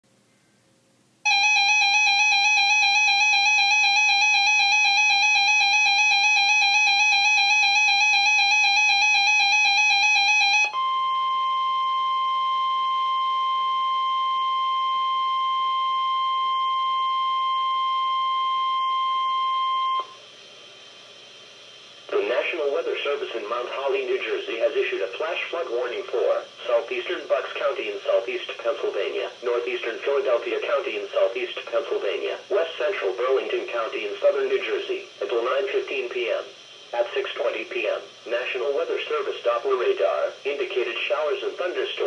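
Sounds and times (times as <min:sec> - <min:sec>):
faint radio hiss: 0:00.1 - 0:01.3, 0:20.1 - 0:42.0
buzzy two-tone alarm: 0:01.3 - 0:20.2
steady pure warning tone: 0:01.3 - 0:42.0.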